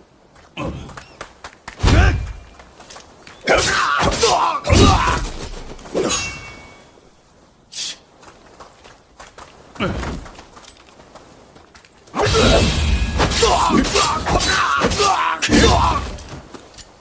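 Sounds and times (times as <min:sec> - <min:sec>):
heavy thuds and whacks: 0:01.8 - 0:02.5, 0:03.5 - 0:06.0, 0:12.2 - 0:16.6
harsh clash: 0:12.2 - 0:16.2.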